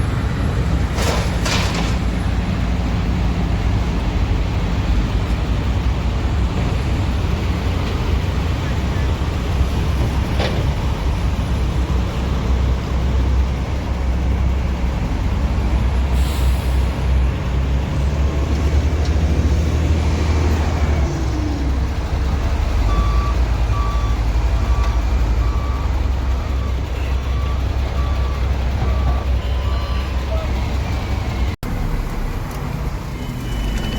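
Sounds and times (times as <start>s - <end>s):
diesel engine rumbling: 0.0s - 33.9s
reversing alarm beeps: 22.3s - 31.6s.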